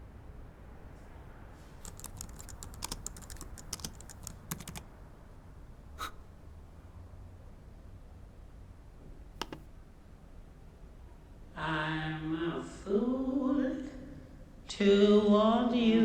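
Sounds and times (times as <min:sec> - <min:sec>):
keyboard typing clicks: 0:01.8 - 0:04.8, 0:09.4 - 0:09.7.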